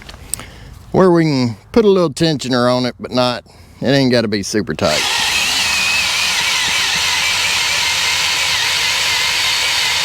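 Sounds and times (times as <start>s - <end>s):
drill motor whining under load: 4.9s - 10.0s.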